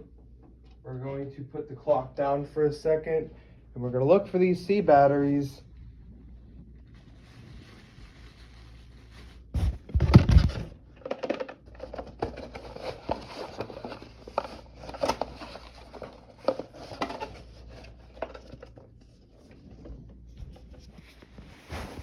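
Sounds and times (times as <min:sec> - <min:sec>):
hands rummaging through packaging: 0:07.1 - 0:19.3.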